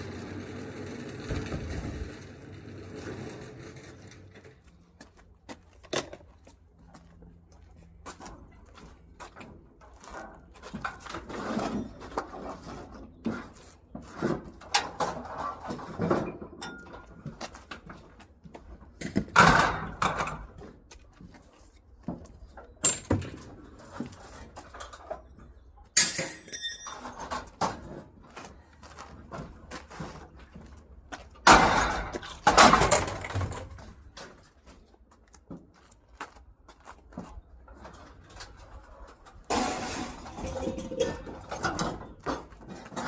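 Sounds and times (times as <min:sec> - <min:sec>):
metallic clang: 0:39.5 - 0:42.0
objects knocking and rustling: 0:39.5 - 0:43.0.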